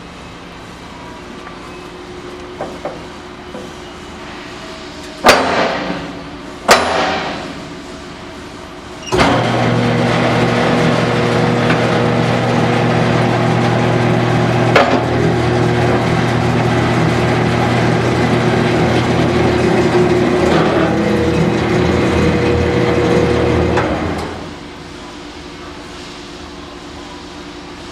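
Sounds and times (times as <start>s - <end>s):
baler motor hum: 9.0s - 24.8s.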